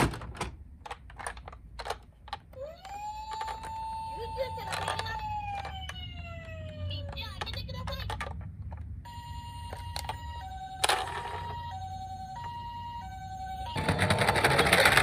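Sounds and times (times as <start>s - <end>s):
toy electronic two-tone siren: 2.5s - 7.5s, 9.0s - 15.0s
loud rattling noise: 13.7s - 15.0s.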